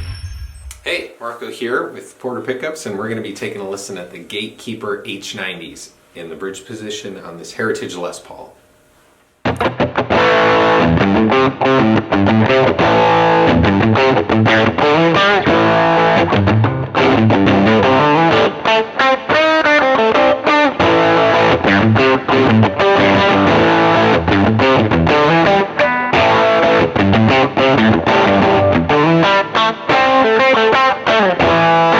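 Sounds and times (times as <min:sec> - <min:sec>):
distorted electric guitar riffs: 0:00.0 - 0:01.0, 0:09.4 - 0:31.9.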